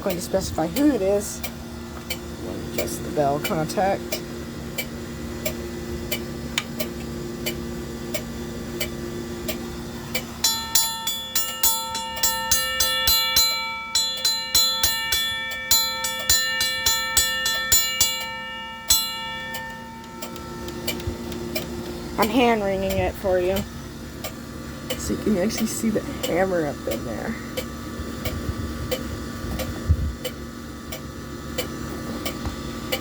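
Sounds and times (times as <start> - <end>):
crossing signal relay clicking: 2.8 - 33.0
low hum: 8.6 - 24.9
railroad crossing bell ringing: 10.4 - 24.1.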